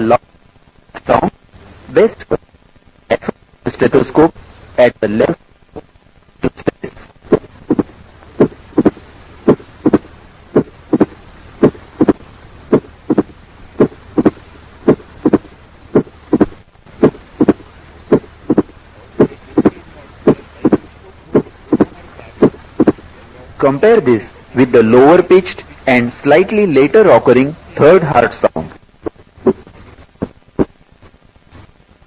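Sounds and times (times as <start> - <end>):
slow steady heartbeat: 7.2 - 23.2, 29.0 - 30.8
high-pitched heart snapping sound: 7.3 - 19.7.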